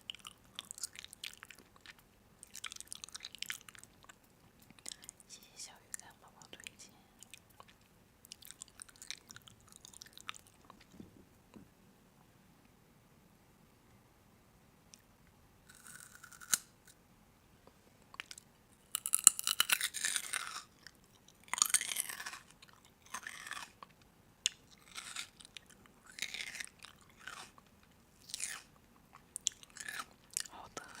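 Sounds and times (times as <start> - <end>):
person chewing crunchy food: 0.0 - 5.2, 7.2 - 11.0, 15.7 - 16.6, 18.2 - 31.0.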